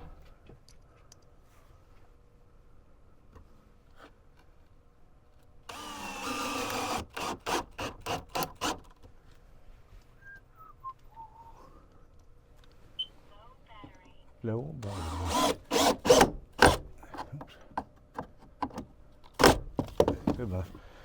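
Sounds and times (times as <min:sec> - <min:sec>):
cordless drill driving screw: 0:05.7 - 0:08.9, 0:14.8 - 0:16.9.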